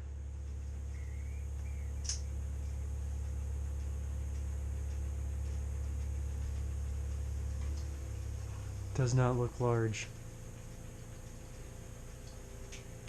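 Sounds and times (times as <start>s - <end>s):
machinery humming: 0.0s - 13.0s
sharp click: 2.0s - 2.3s.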